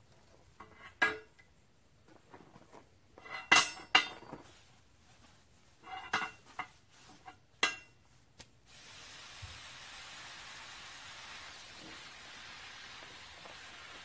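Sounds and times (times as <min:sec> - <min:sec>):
torch hissing: 0:08.7 - 0:14.0.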